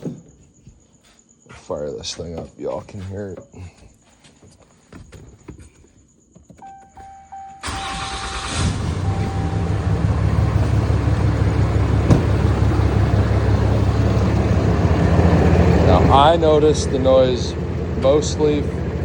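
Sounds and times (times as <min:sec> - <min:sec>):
diesel engine cranking and starting: 0:07.6 - 0:19.0
diesel engine idling: 0:07.6 - 0:19.0.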